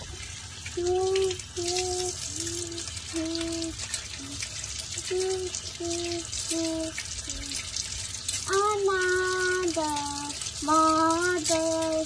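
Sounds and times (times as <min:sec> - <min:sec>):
dishwasher water spraying: 0:00.0 - 0:12.0
person humming a tune: 0:00.8 - 0:04.4, 0:05.0 - 0:07.6.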